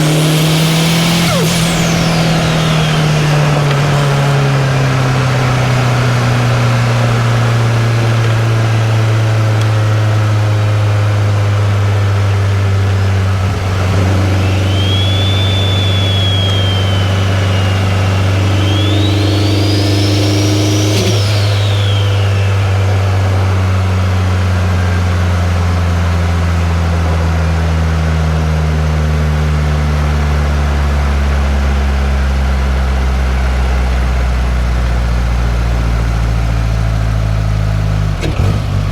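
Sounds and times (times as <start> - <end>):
turbo whistle: 0.0 - 9.0, 12.9 - 24.3
car engine droning: 0.0 - 38.9.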